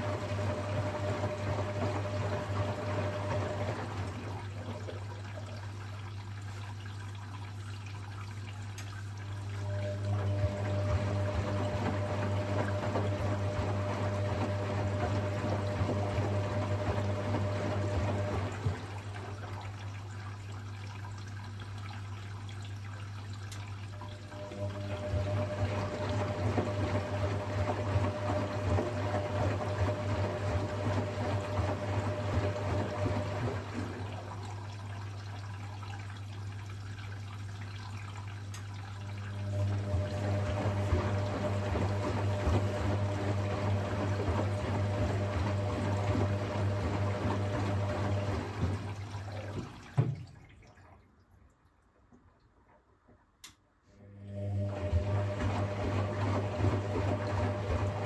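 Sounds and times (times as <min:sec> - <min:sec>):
washing machine low hum: 0:00.0 - 0:51.1, 0:53.4 - 0:58.0
water rushing into drum: 0:00.0 - 0:52.6, 0:54.6 - 0:58.0
washing machine knock: 0:40.0 - 0:50.3
click: 0:53.4 - 0:53.6.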